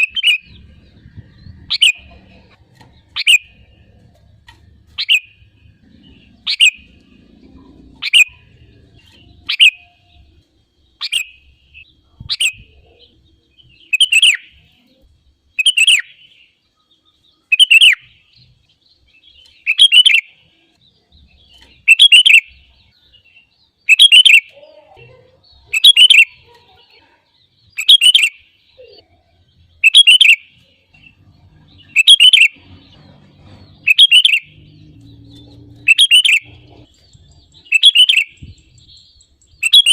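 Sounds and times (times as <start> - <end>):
bulbul singing whistled phrases: 0.0 - 3.9, 4.9 - 14.9, 15.5 - 18.4, 19.2 - 20.4, 21.3 - 24.8, 25.4 - 26.6, 27.7 - 32.8, 33.6 - 39.9.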